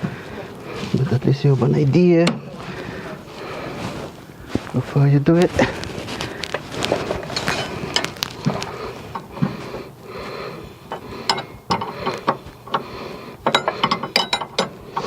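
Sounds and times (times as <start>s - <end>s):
metal tool clicks and knocks: 10.9s - 12.8s, 13.4s - 15.0s
ratchet clicking: 10.9s - 15.0s.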